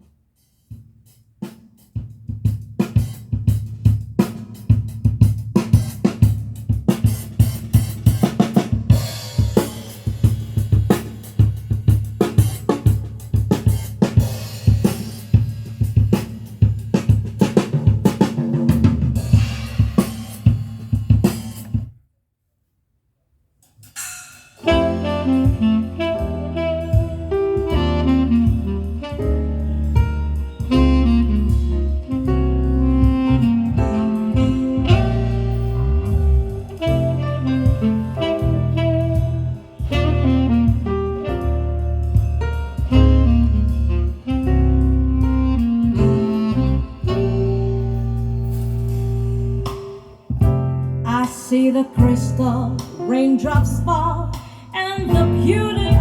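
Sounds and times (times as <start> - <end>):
drum-led music through speakers: 1.9 - 21.8, 24.0 - 52.2, 55.1 - 56.0
sustained pitched notes: 55.4 - 56.0.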